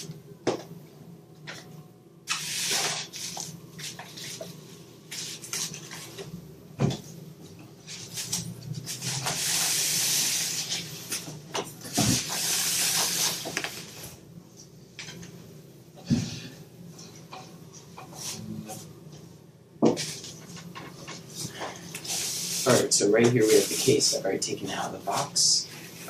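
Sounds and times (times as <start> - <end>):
rustling and handling noise: 2.3 - 15.4.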